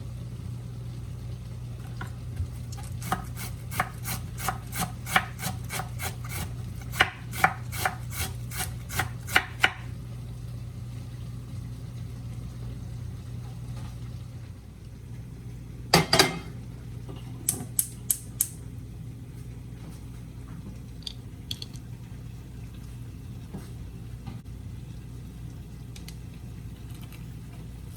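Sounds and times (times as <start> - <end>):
steady low hum: 0.0 - 27.9
knife chopping cabbage on board: 3.0 - 9.8.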